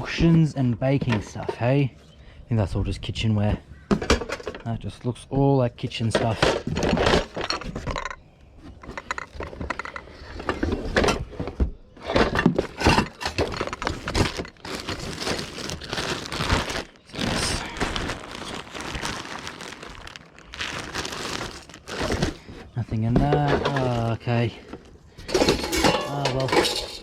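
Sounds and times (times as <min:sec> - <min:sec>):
rustling: 0:06.2 - 0:27.0
kitchenware knocking and clattering: 0:08.8 - 0:14.8, 0:25.2 - 0:27.0.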